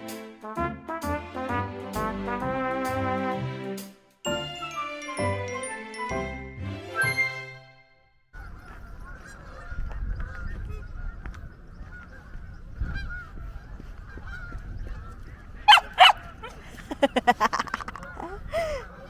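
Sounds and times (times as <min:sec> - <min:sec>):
jingling music: 0:04.2 - 0:07.9
low wind rumble: 0:08.4 - 0:19.0
geese honking: 0:15.7 - 0:16.4.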